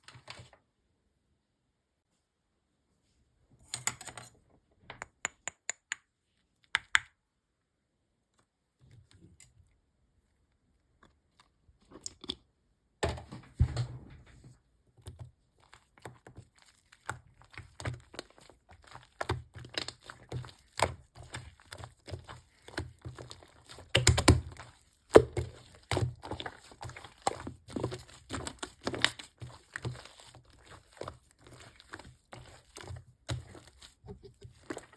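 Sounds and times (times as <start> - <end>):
slime crackling and squishing: 15.0 - 34.9.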